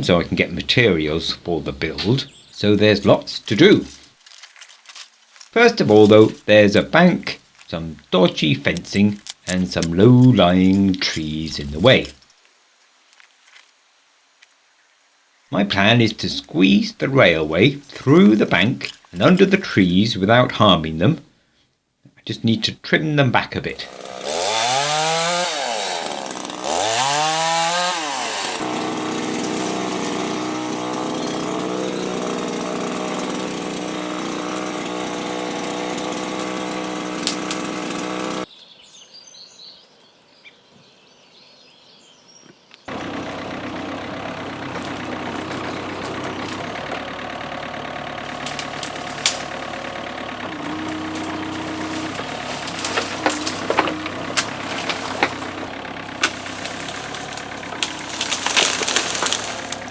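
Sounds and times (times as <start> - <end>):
chainsaw revving and cutting: 23.8 - 38.5, 42.9 - 59.9
steady engine sound: 26.7 - 38.5, 42.9 - 59.9.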